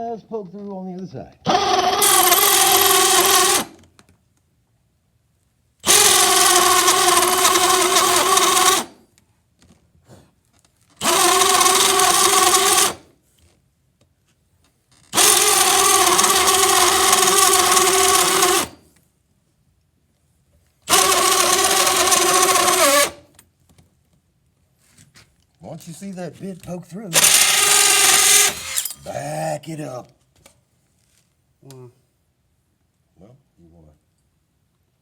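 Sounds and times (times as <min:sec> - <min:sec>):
power drill boring through wood: 0:01.5 - 0:03.8, 0:05.8 - 0:09.0, 0:11.0 - 0:13.0, 0:15.1 - 0:18.8, 0:20.9 - 0:23.4, 0:27.1 - 0:29.0.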